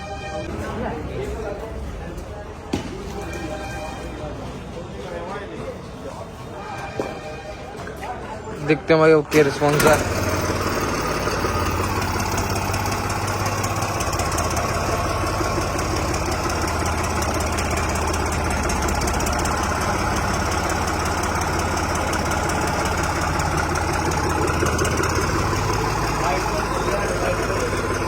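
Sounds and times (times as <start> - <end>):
tractor diesel engine running: 9.0 - 28.0.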